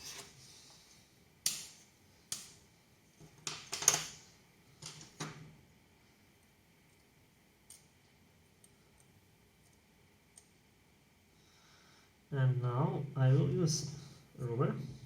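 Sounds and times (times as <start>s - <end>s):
small parts clicking on a workbench: 3.2s - 4.2s, 4.8s - 5.4s.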